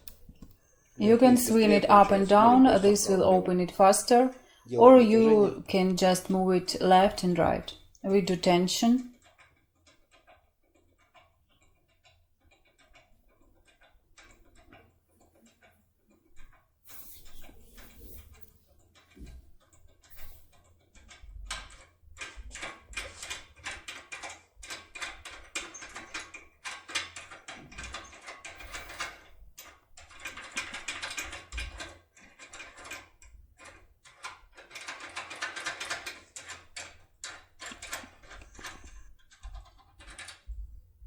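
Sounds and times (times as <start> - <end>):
lock pins clicking and rattling: 6.9 - 16.6, 18.7 - 40.8.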